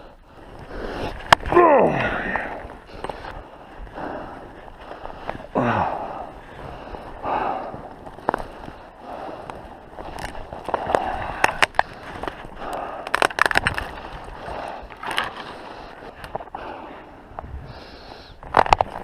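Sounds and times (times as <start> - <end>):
ice cracking and snapping: 0.6 - 3.9, 4.6 - 16.6, 18.2 - 19.0.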